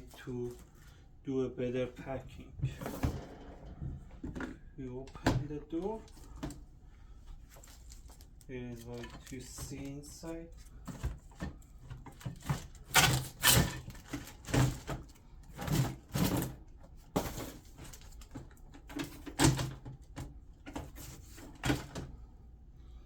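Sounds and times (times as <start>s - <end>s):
dishwasher parts knocking and rattling: 2.6s - 4.6s, 10.9s - 22.1s.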